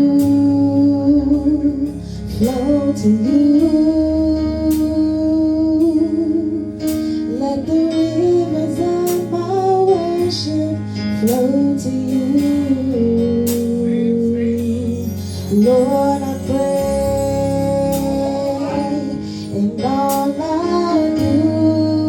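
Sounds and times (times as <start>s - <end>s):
guitar accompaniment: 0.0s - 22.0s
woman singing: 0.0s - 22.0s.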